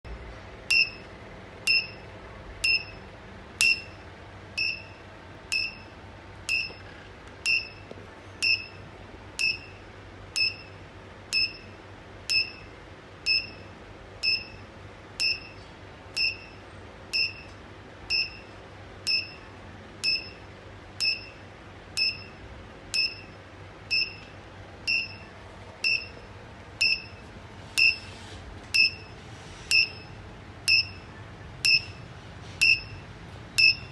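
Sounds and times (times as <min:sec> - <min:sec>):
short high beep: 0:27.8 - 0:28.1, 0:28.8 - 0:32.0.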